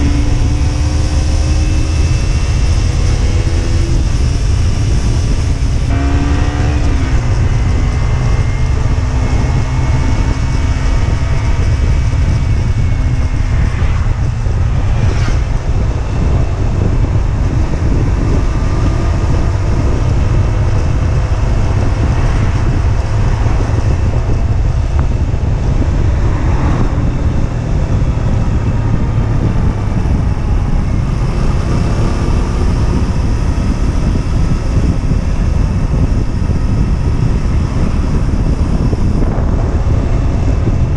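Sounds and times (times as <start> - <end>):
motorcycle engine at road speed: 0.0 - 40.9
wind noise on microphone: 0.0 - 40.9.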